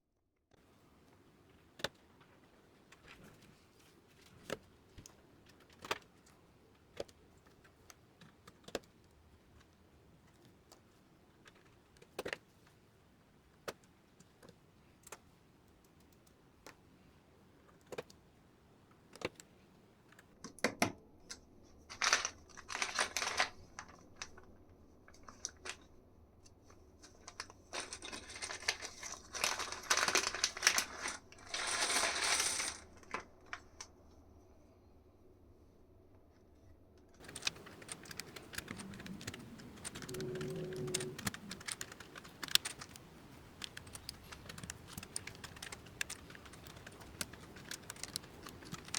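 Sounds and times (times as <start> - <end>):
keyboard keys clicking: 37.2 - 48.9.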